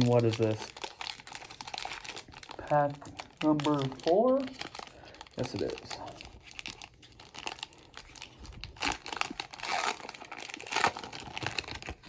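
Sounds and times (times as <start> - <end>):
plastic wrapper tearing and crinkling: 0.0 - 12.0.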